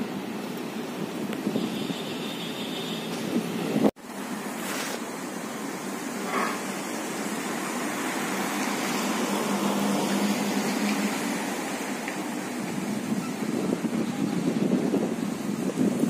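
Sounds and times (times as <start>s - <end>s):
wind buffeting microphone: 12.2s - 16.0s.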